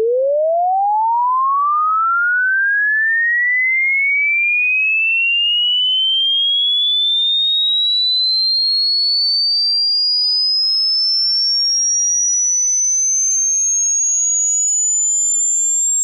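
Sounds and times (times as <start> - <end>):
rising sine tone sweep: 11.1 - 16.0.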